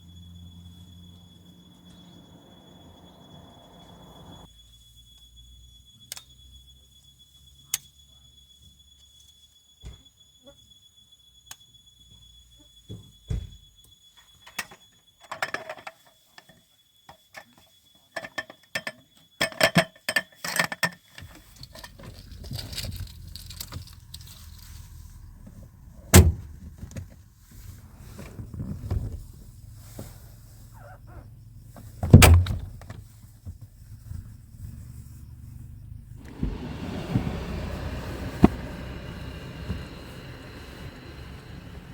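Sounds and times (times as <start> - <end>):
low steady rumble: 21.5 - 41.9.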